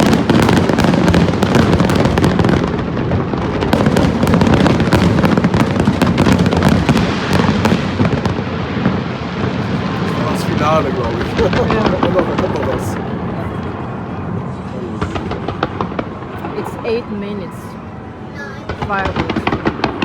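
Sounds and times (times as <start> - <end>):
fireworks bangs and crackles: 0.0 - 17.7, 18.6 - 20.0
continuous low rumble: 9.5 - 20.0.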